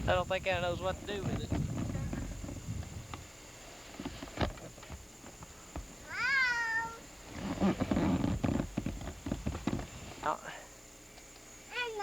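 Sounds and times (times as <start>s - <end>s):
cat meowing: 6.1s - 7.0s.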